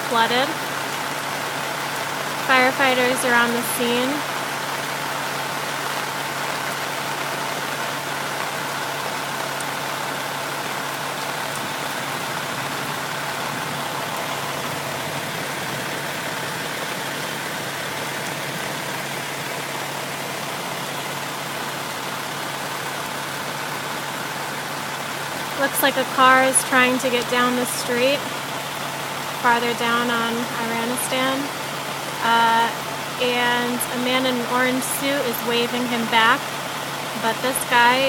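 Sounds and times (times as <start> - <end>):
rain and floodwater hiss: 0.0 - 38.0
vehicle engine idling: 0.0 - 38.0.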